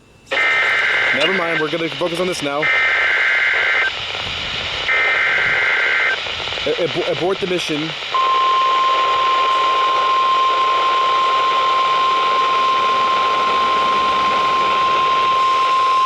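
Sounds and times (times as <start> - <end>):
radio static hiss: 0.3 - 16.0
steady high alarm tone: 0.3 - 16.0.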